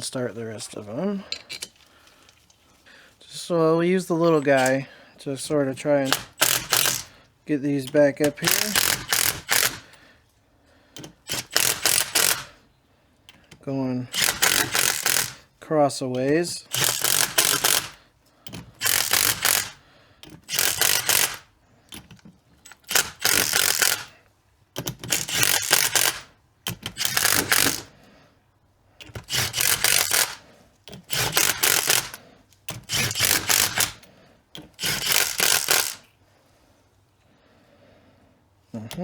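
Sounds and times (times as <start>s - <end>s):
hand ratchet clicking: 4.3s - 4.8s, 5.7s - 10.1s, 10.9s - 12.6s, 13.2s - 24.2s, 24.8s - 28.0s, 29.0s - 36.2s.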